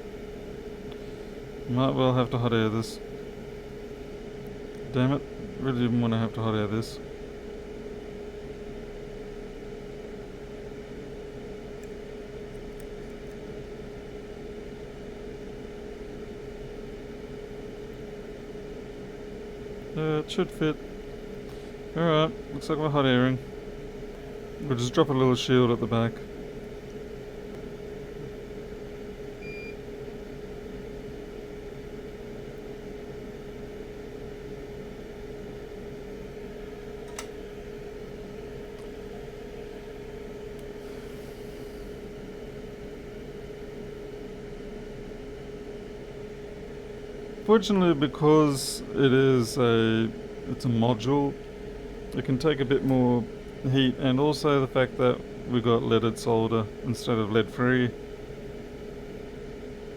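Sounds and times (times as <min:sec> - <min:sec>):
electric fan whirring: 0:00.0 - 0:59.9
sharp click: 0:37.0 - 0:37.4
hot air station hissing: 0:40.8 - 0:42.1.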